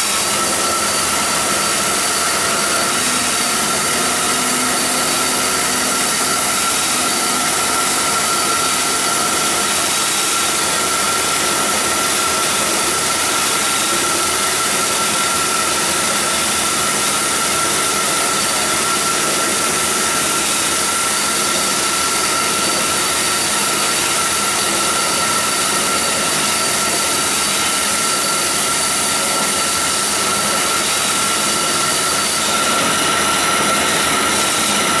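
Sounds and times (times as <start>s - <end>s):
bandsaw running with high whine: 0.0s - 35.0s.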